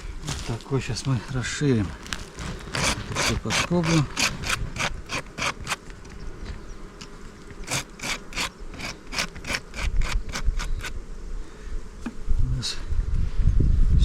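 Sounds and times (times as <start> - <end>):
rasping scraping on wood: 1.8 - 6.2, 7.0 - 11.0.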